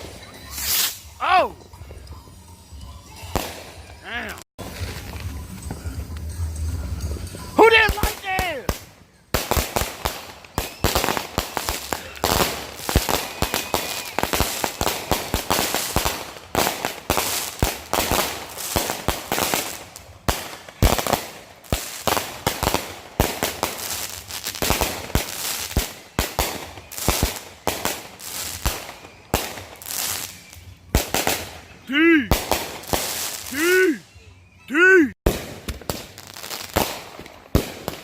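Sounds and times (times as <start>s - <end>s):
fireworks bangs and crackles: 0.0s - 1.2s, 3.2s - 33.9s, 35.2s - 38.0s.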